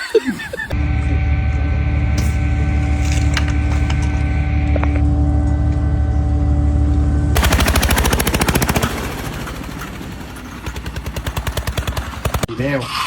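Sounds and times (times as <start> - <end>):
machine engine humming: 0.0 - 12.5
rapid sharp impacts: 7.4 - 12.5.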